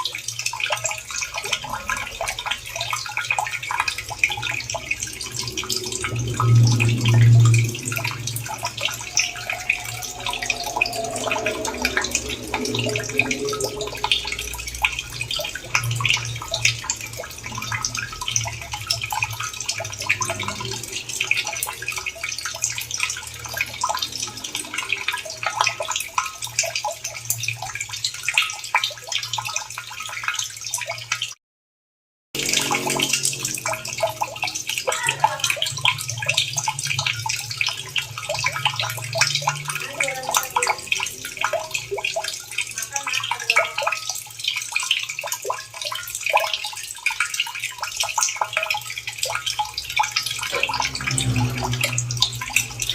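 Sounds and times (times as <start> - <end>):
water splashing and trickling: 0.0 - 31.4, 32.4 - 52.9.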